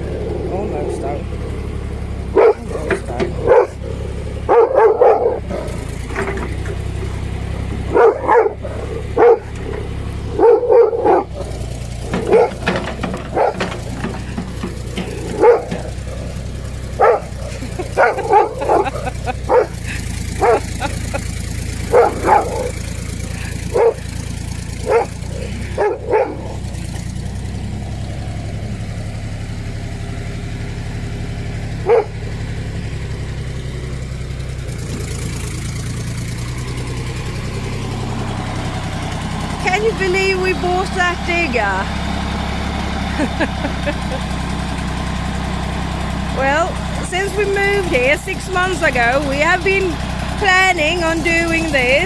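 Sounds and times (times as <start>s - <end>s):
excavator engine humming: 0.0s - 52.0s
dog barking: 2.3s - 27.1s, 31.8s - 32.3s.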